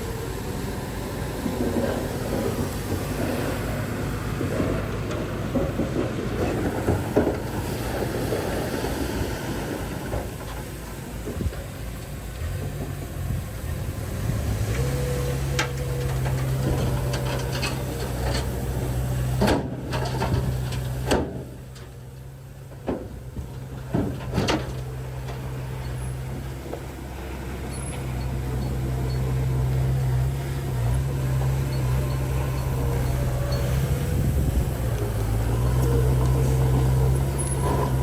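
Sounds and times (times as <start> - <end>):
diesel engine running: 0.0 - 38.0.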